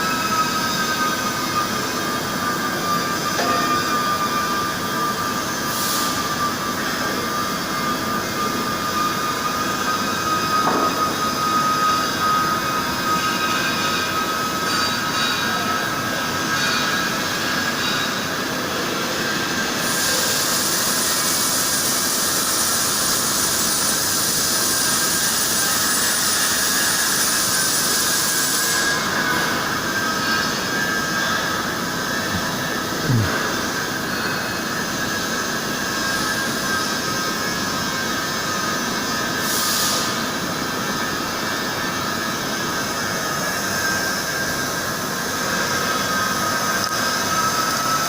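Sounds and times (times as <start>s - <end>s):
milling machine spindle whine: 0.0s - 48.0s
loud high hiss: 31.8s - 33.9s.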